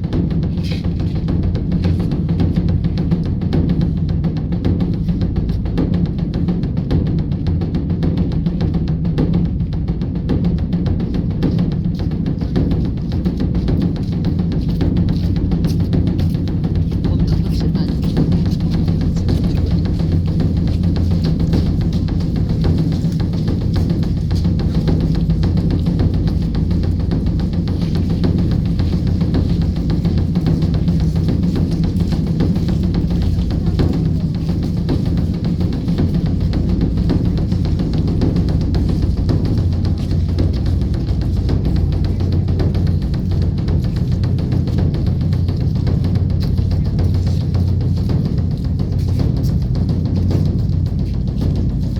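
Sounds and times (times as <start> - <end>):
large drum beaten fast: 0.0 - 51.9
steady low hum: 8.9 - 51.9.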